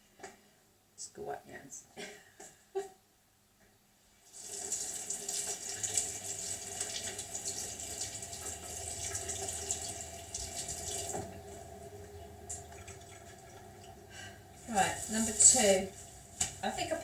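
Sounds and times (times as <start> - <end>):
water running into sink: 4.2 - 17.0.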